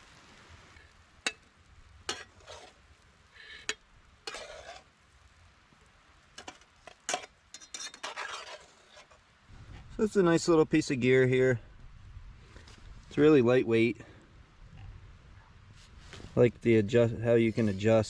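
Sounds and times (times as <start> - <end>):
steak sizzling: 0.0 - 9.2
short scrapes: 2.2 - 2.8, 4.3 - 4.9, 7.7 - 9.2, 17.4 - 18.0.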